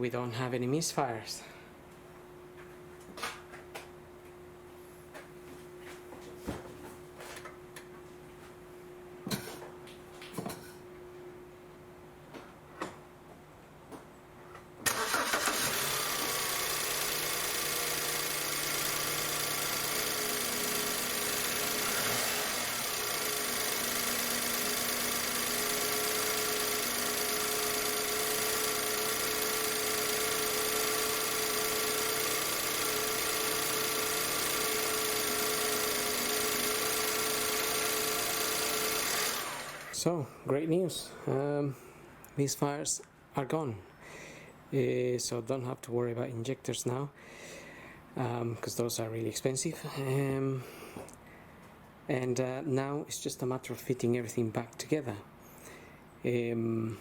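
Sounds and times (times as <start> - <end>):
car engine cranking and idling: 14.8 - 40.0.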